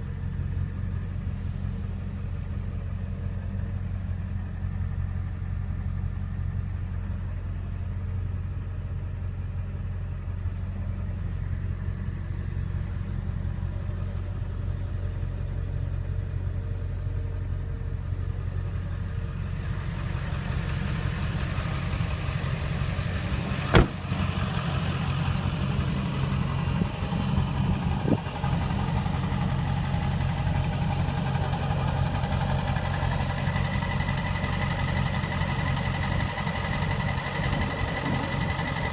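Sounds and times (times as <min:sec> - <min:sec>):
diesel engine idling: 0:00.0 - 0:38.9
sharp knock: 0:23.7 - 0:24.0.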